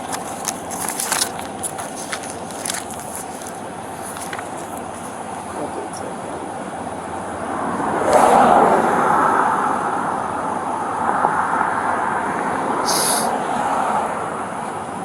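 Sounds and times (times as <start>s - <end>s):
vehicle passing rumble: 0.0s - 15.0s
short hisses: 12.9s - 13.3s.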